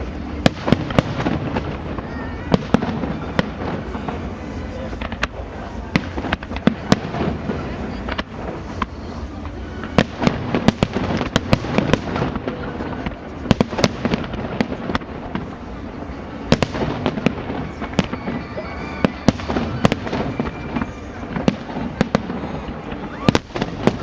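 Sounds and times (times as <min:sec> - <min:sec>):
fireworks crackling: 0:00.0 - 0:24.0.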